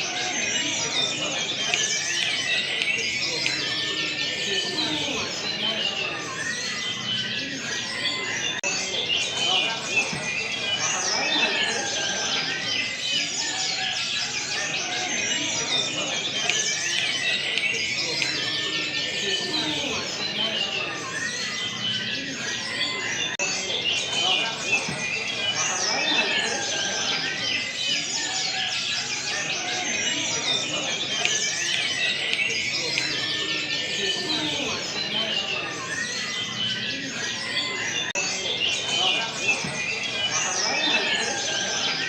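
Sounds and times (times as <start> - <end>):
chorus of songbirds singing: 0.0 - 42.0.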